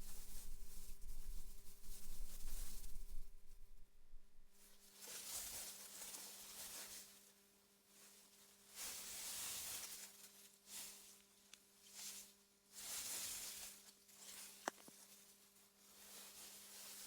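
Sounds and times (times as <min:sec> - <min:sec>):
faint low hum: 0:00.0 - 0:04.8
wind rustling through grass: 0:00.0 - 0:04.8.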